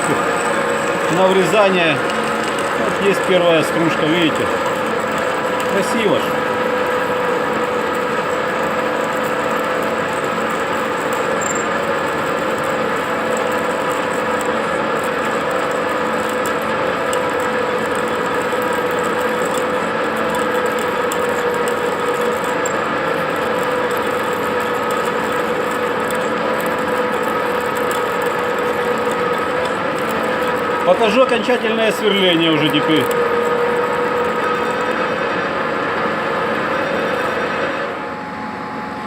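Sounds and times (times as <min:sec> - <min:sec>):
steady whining tones: 0:00.0 - 0:09.2, 0:11.0 - 0:39.0
metal lathe drone: 0:00.0 - 0:39.0.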